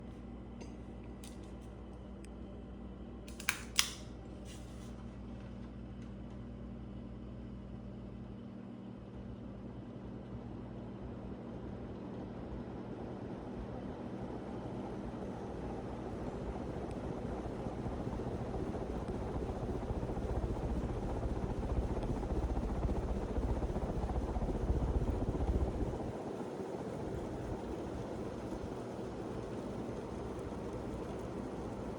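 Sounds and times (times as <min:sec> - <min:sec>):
sharp clicks: 0:03.3 - 0:04.0
electric fan motor hum: 0:11.5 - 0:31.9.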